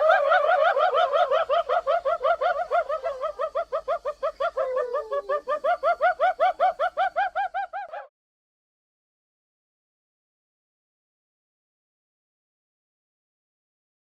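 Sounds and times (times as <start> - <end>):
hyena drawn-out falling call: 0.0 - 8.1
hyena giggling yelps: 0.0 - 8.1.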